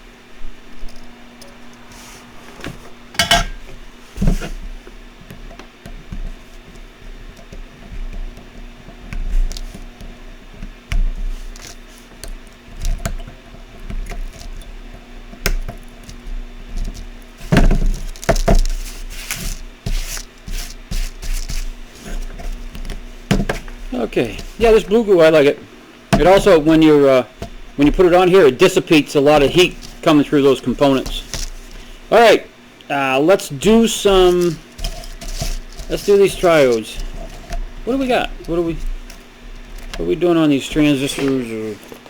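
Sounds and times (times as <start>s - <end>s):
steady low hum: 0.0s - 42.0s.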